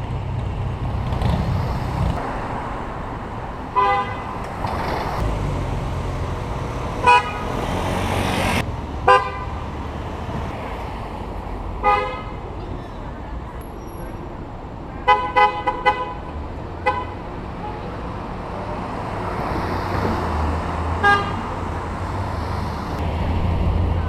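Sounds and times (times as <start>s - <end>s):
road traffic rumble: 0.0s - 24.0s
car horns tooting: 3.7s - 4.4s, 7.0s - 7.7s, 9.0s - 9.7s, 11.8s - 12.5s, 15.0s - 18.0s, 21.0s - 21.6s.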